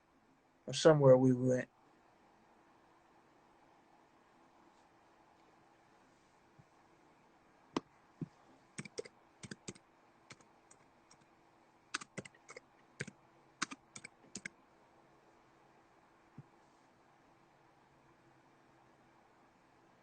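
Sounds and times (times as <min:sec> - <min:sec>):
typing on a phone: 0:08.8 - 0:11.2, 0:11.9 - 0:14.6.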